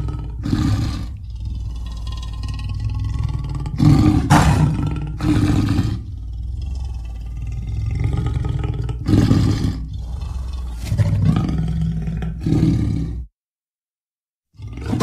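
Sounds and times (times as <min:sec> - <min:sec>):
big cat growling: 0:00.0 - 0:13.3, 0:14.5 - 0:15.0
big cat roaring: 0:00.0 - 0:13.3, 0:14.6 - 0:15.0.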